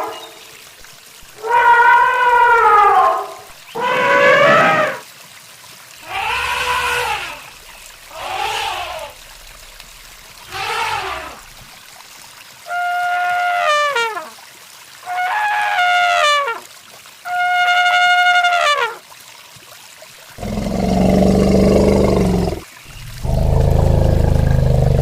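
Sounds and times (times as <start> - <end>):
farm animal crying: 3.8 - 5.0, 6.0 - 7.4.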